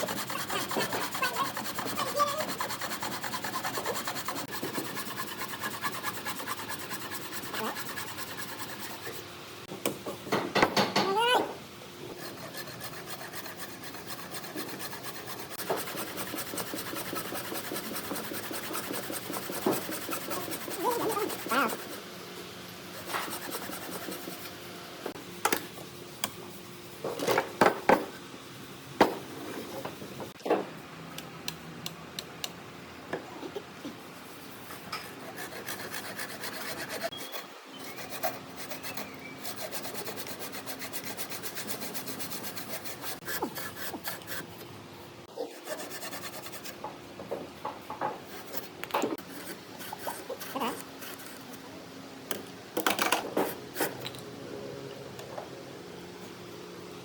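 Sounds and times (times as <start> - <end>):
rubbing and scraping on wood: 0.0 - 9.3, 12.1 - 22.0, 23.0 - 24.6, 34.4 - 44.5.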